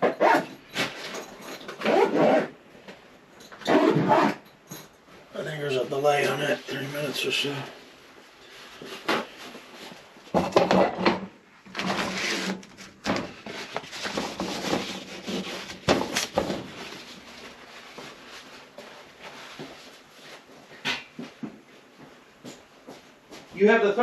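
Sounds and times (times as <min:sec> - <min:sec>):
knocks and clunks of handling: 0:10.2 - 0:12.1.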